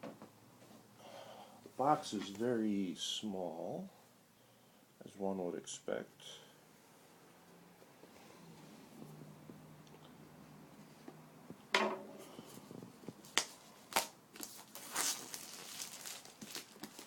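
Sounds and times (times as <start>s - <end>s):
cardboard and plastic rustling: 12.4s - 17.0s.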